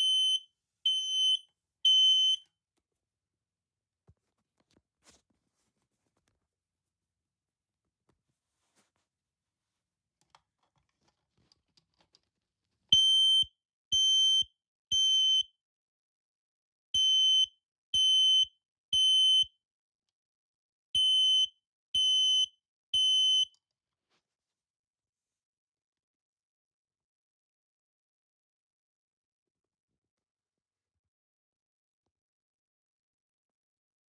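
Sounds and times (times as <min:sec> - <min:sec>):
smoke detector beeping: 0:00.0 - 0:02.4.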